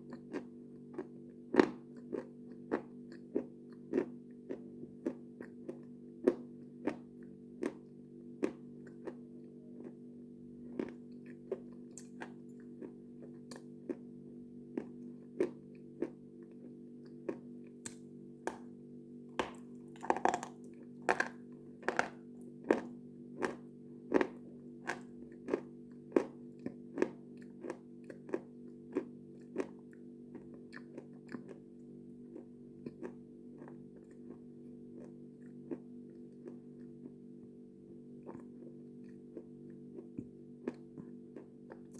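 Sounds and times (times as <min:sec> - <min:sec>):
brittle food crunching: 0:17.3 - 0:18.7, 0:19.3 - 0:26.3.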